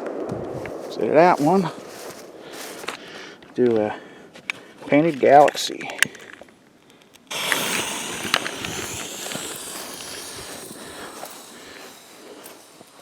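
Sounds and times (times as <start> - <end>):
fuse crackles: 7.2 - 13.0
firework fuse hissing: 7.3 - 13.0.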